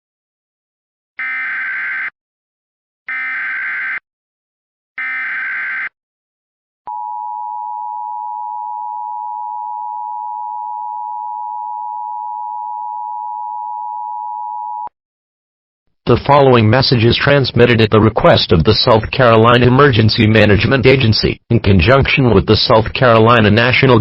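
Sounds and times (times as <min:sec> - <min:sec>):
screechy data tone bursts: 0:01.2 - 0:02.1, 0:03.1 - 0:04.0, 0:05.0 - 0:05.9.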